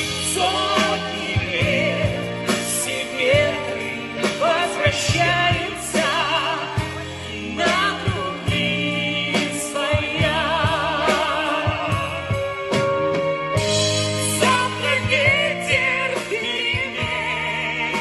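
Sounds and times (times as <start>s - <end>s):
bass: 0.0s - 18.0s
person singing with vibrato: 0.0s - 18.0s
steady drum beat: 0.0s - 18.0s.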